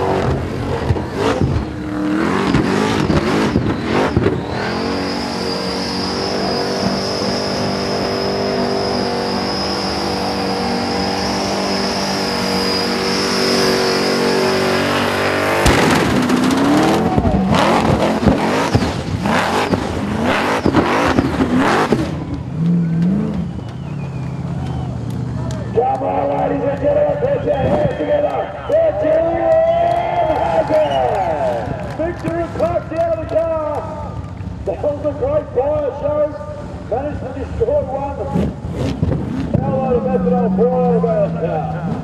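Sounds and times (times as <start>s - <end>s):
tyre squeal: 0.0s - 15.4s, 16.4s - 24.9s
engine at high revs: 0.0s - 24.3s, 38.1s - 42.0s
sharp bang: 15.6s - 16.6s.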